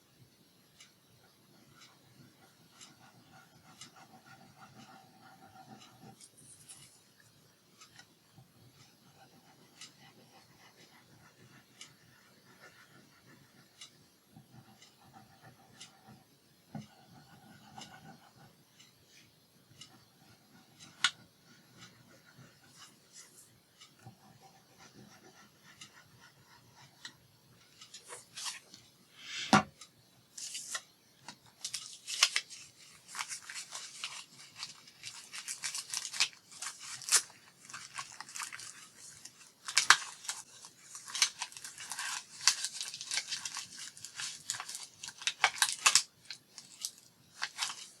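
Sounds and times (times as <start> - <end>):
paper rustling and crinkling: 31.5 - 48.0.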